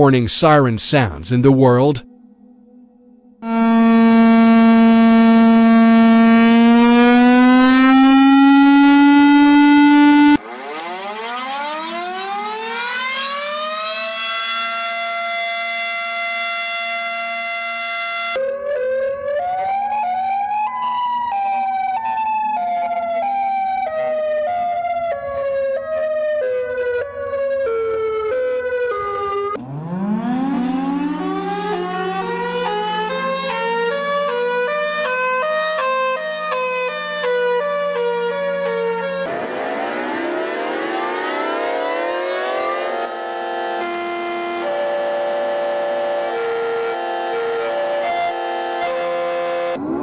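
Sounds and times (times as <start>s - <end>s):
warning siren wailing: 2.0s - 50.0s
wavering siren tone: 2.0s - 50.0s
siren winding up: 3.4s - 18.4s, 28.4s - 50.0s.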